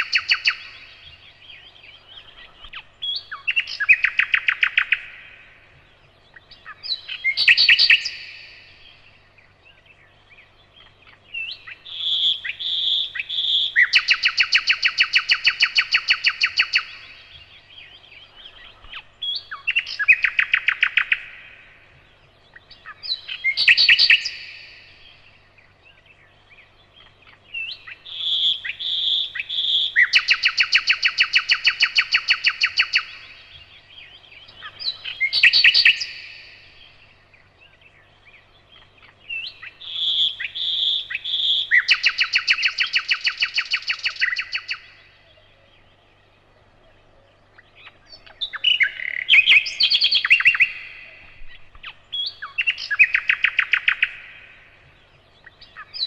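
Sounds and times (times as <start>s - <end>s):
nightingale singing: 0.0s - 56.0s.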